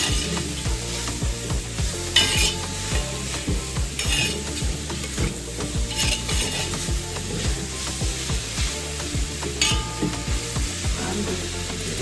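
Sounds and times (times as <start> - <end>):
vegetables sizzling in a pot: 0.0 - 12.0
spoon scraping a pot: 2.1 - 7.0.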